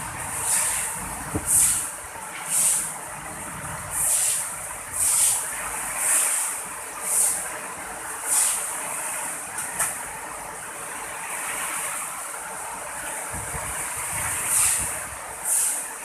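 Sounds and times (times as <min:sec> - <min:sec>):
wind rumble on microphone: 0:00.0 - 0:01.8, 0:13.3 - 0:15.3
heavy rain hissing: 0:00.0 - 0:16.0.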